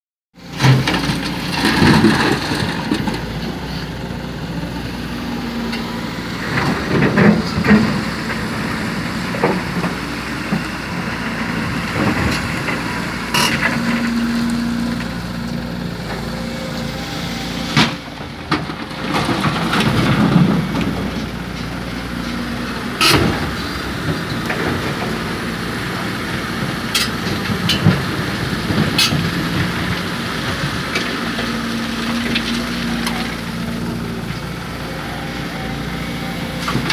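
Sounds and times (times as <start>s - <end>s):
excavator diesel engine: 0.4s - 36.9s.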